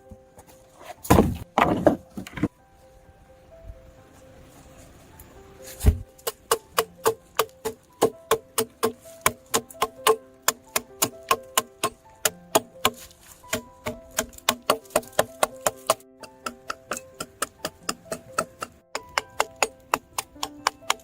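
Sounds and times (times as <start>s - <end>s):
plucked notes: 5.2s - 21.0s
ticking beat: 6.2s - 21.0s.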